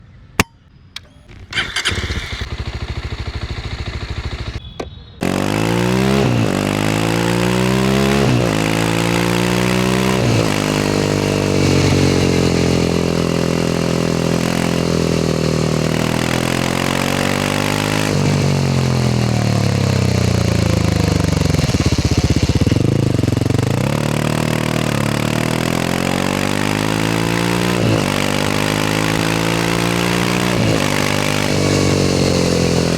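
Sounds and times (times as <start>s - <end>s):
engine starter cranking: 1.0s - 4.6s
motorcycle engine revving: 1.0s - 32.9s.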